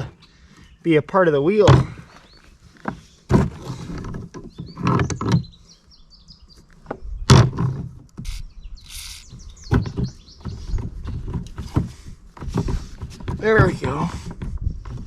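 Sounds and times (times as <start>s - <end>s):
knocks and scrapes on metal axle: 7.3s - 15.0s.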